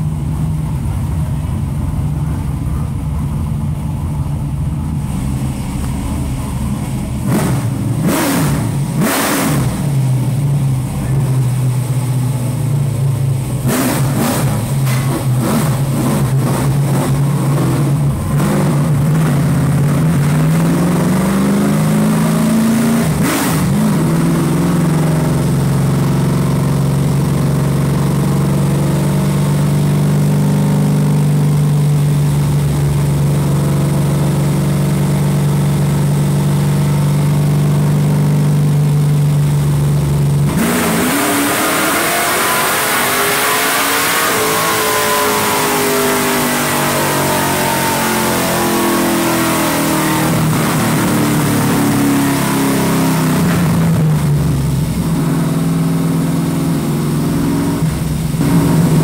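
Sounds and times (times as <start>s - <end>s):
engine crackles and pops: 0.0s - 21.4s, 56.7s - 59.0s
engine running on dyno: 0.0s - 59.0s.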